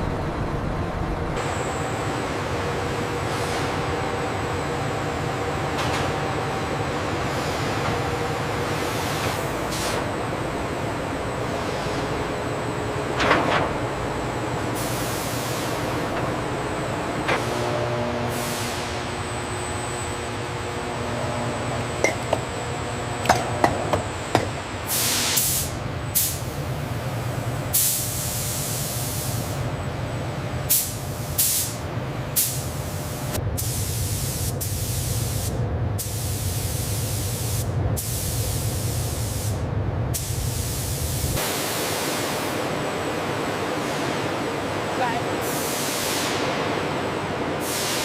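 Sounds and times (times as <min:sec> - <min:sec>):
low machine hum: 0:00.0 - 0:27.8
hissing spray bursts: 0:24.9 - 0:26.4, 0:30.7 - 0:31.8.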